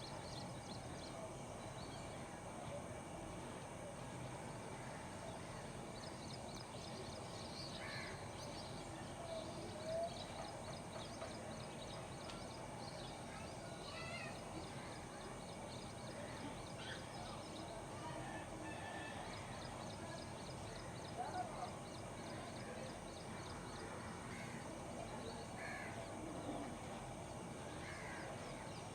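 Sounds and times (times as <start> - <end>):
steady background hum: 0.0 - 28.9
crows cawing: 7.8 - 8.2, 25.6 - 26.0, 27.8 - 28.3.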